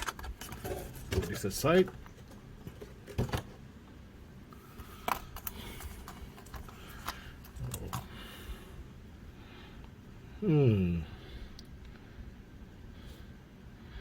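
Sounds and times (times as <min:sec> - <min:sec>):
packaging rustling: 0:04.7 - 0:08.2.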